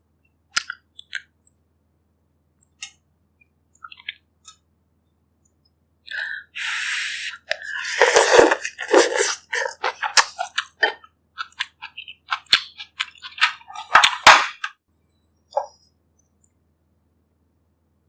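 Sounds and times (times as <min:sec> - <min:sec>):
chewing and slurping: 0:07.5 - 0:14.3.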